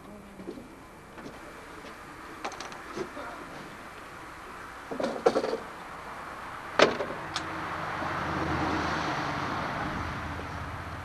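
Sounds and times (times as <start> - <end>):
vehicle passing by: 6.1 - 11.0.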